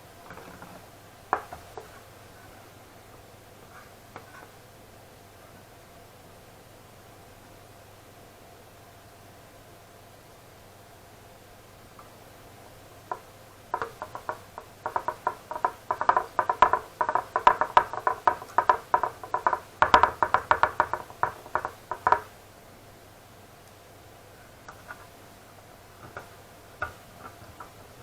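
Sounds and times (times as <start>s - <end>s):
hard objects clicking together: 13.8s - 22.3s.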